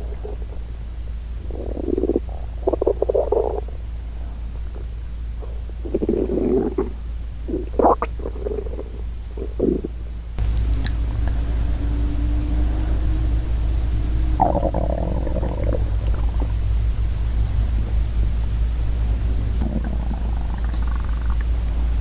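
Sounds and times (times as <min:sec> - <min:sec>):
stomach growling and gurgling: 0:00.0 - 0:00.8, 0:01.4 - 0:11.4, 0:14.4 - 0:17.7, 0:19.6 - 0:22.0.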